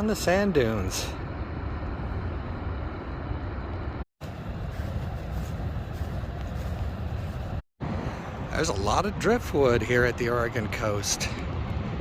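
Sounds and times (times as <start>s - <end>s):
wind rumbling on microphone: 1.3s - 12.0s.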